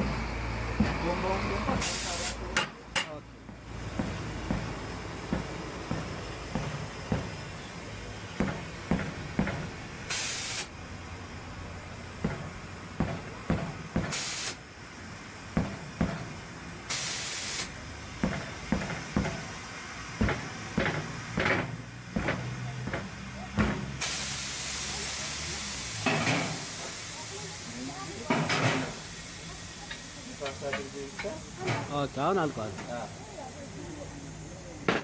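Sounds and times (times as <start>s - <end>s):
compressed air hiss: 1.4s - 2.6s, 3.5s - 10.8s, 13.0s - 35.0s
metal knocks and clanks: 2.5s - 7.5s, 8.4s - 9.8s, 18.2s - 19.6s, 20.2s - 24.0s.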